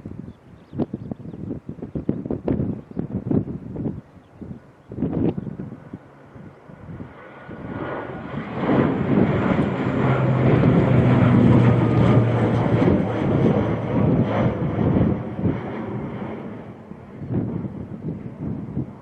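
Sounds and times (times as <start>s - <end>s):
jet engines roaring: 4.6s - 19.0s.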